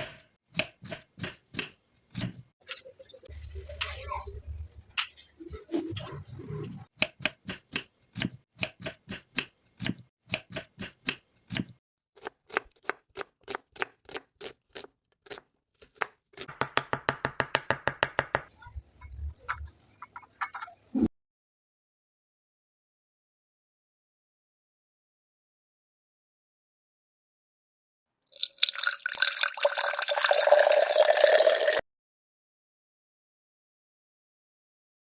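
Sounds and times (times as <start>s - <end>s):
knife chopping on cutting board: 12.2s - 18.5s.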